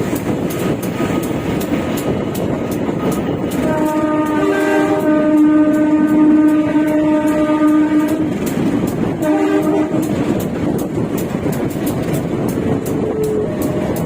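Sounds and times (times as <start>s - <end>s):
train wheels rumbling on rails: 0.0s - 14.0s
locomotive horn blasts: 3.5s - 8.4s, 9.2s - 10.3s, 13.0s - 13.9s.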